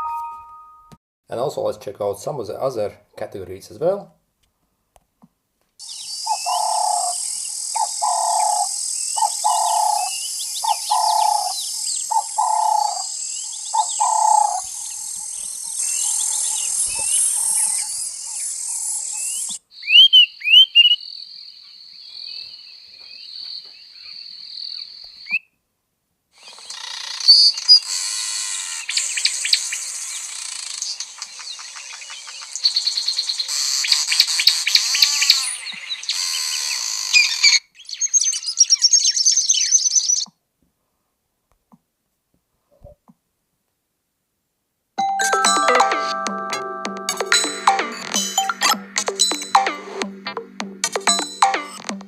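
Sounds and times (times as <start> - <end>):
high insect-like trill: 14.0 - 19.5
birdsong ringtone through phone speaker: 45.0 - 52.0.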